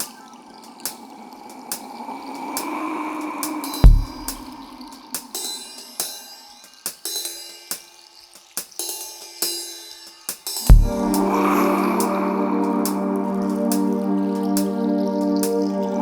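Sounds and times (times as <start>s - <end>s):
sparse percussion with hi-hat ticks: 0.0s - 11.3s
deep bass hit: 10.7s - 11.4s.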